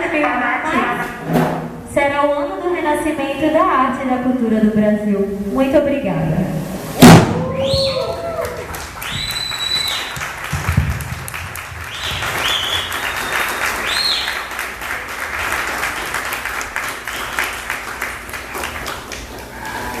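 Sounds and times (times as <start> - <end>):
audience applauding: 7.7 - 20.0
high whistles: 9.0 - 10.3, 11.8 - 14.6.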